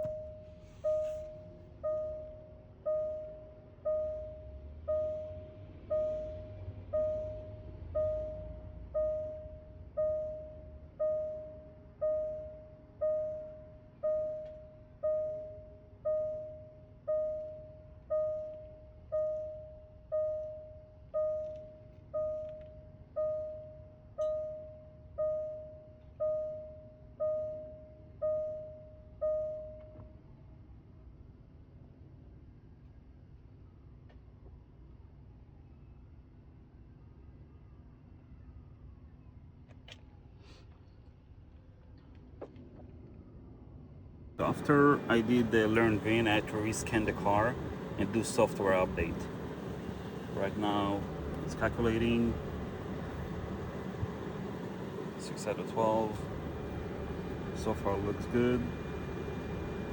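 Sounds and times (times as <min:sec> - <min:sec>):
car warning chime: 0:00.0 - 0:30.0, 0:44.4 - 0:59.9.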